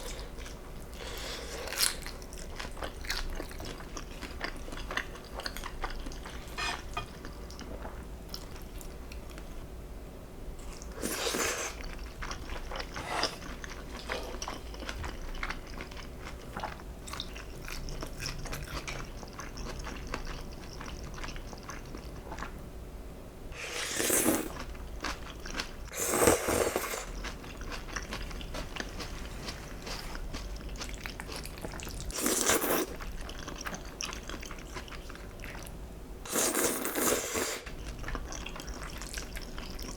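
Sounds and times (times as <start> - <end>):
chewing with wet mouth clicks: 1.7 - 9.5, 11.7 - 22.5, 24.5 - 25.8, 27.0 - 35.8, 37.7 - 39.9.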